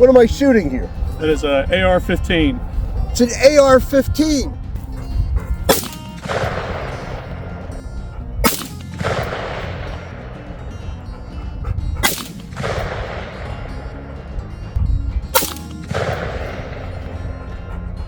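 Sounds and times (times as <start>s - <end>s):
rifle shots: 5.7s - 11.1s, 12.0s - 14.7s, 15.3s - 17.6s
echo rolling away: 5.7s - 18.0s.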